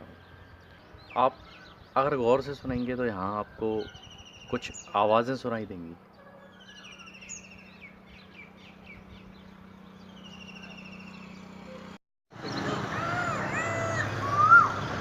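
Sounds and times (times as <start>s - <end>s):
birds chirping in trills: 0.0s - 15.0s
steady low hum: 6.8s - 12.0s.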